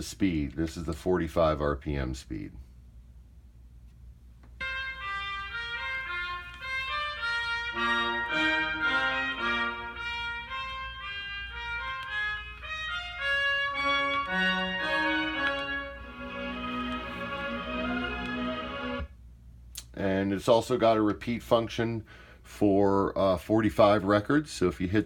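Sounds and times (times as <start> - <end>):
instrumental music from a record: 4.6 - 19.1.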